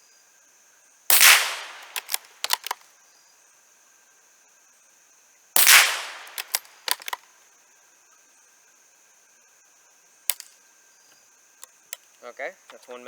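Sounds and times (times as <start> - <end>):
rifle bolt clicking: 1.1 - 2.8, 5.6 - 7.2
rifle shot with echo: 1.1 - 2.8, 5.6 - 7.2.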